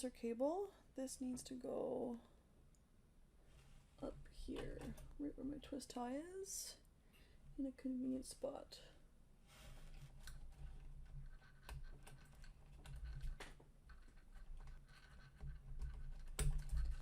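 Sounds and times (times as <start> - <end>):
cable and plastic parts clicking: 10.1 - 17.0.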